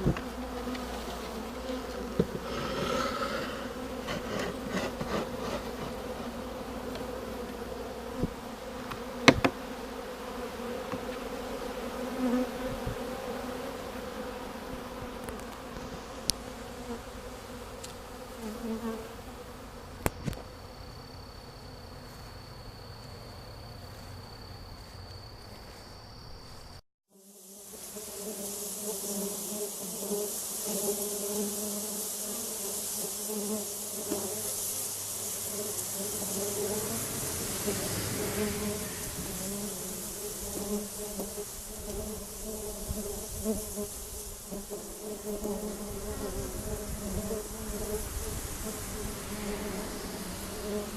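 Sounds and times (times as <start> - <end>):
honey bees buzzing: 0.0 - 50.9
hiss: 2.3 - 6.0, 27.6 - 45.3
sharp knocks: 9.2 - 9.6.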